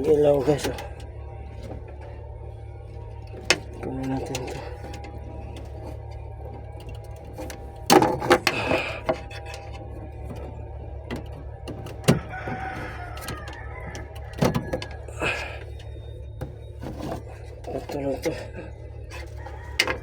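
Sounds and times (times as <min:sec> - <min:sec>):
steady low hum: 0:00.0 - 0:20.0
clicks and knocks of parts handled: 0:19.1 - 0:20.0.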